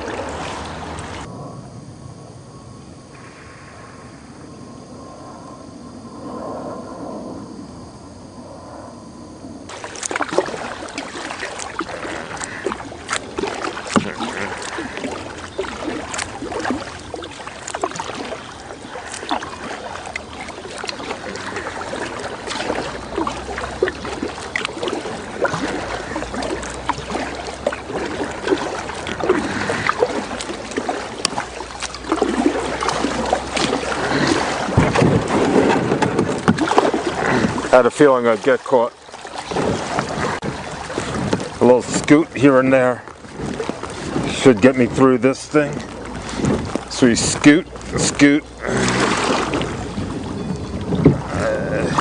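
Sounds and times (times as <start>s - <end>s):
kayak paddle splashing: 0.0s - 1.3s, 9.7s - 52.0s
water dripping: 9.7s - 35.0s
kayak knocking and scraping on debris: 9.7s - 42.2s, 43.1s - 52.0s.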